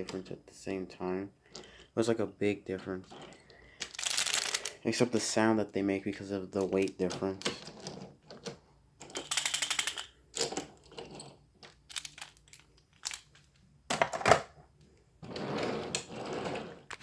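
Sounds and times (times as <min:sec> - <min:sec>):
toy cars clattering: 0:02.8 - 0:05.3, 0:06.5 - 0:14.2.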